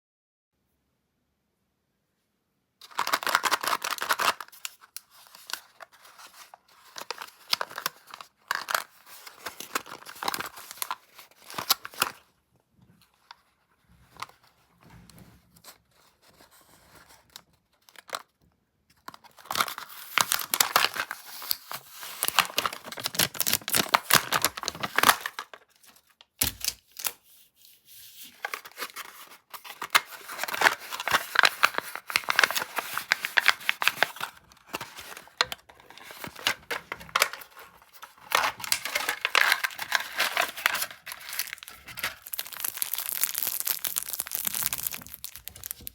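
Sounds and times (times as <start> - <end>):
candy wrapper tearing and crinkling: 2.8 - 12.2, 19.2 - 25.6, 29.5 - 45.9.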